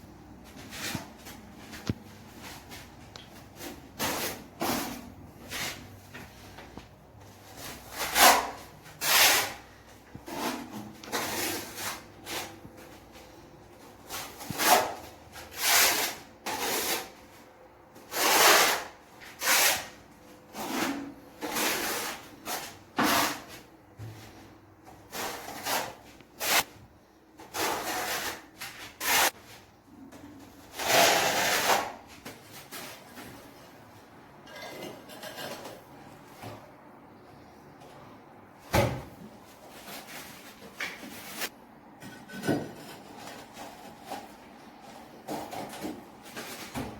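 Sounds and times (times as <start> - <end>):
hand tool scraping a surface: 7.4 - 9.6, 14.0 - 17.2, 18.0 - 23.7, 27.4 - 29.6, 30.6 - 33.3.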